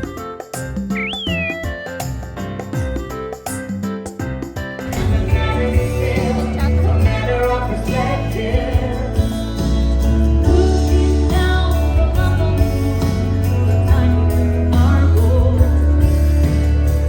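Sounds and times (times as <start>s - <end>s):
singing with heavy bass line: 5.0s - 17.0s.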